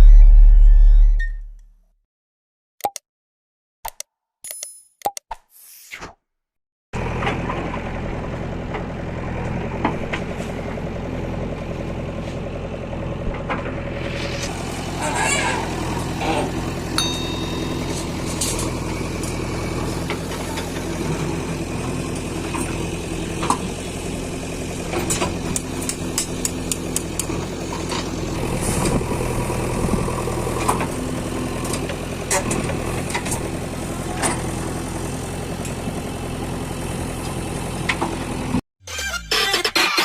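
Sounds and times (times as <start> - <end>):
diesel engine running: 7.0 - 38.6.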